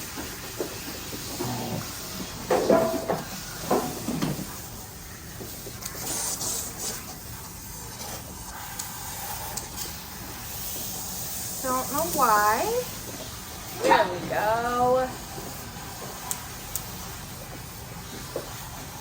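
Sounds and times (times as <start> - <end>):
water hissing from sprayer: 0.0 - 19.0
clattering and rustling: 0.2 - 4.6.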